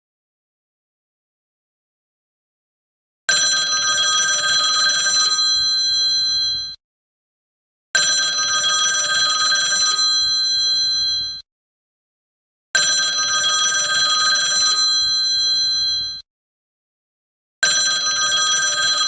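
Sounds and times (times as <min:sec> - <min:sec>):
telephone bell ringing: 0:03.3 - 0:06.8, 0:08.0 - 0:11.4, 0:12.8 - 0:16.2, 0:17.6 - 0:19.0.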